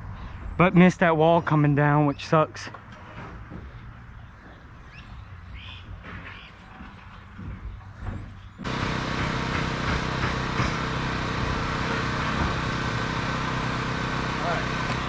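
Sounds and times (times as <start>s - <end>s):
engine running: 8.6s - 15.0s.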